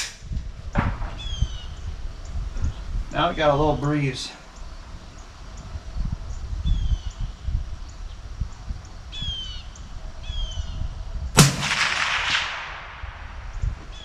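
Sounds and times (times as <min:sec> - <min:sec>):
wind rumble on microphone: 0:00.0 - 0:14.0
rifle shot: 0:11.4 - 0:13.6.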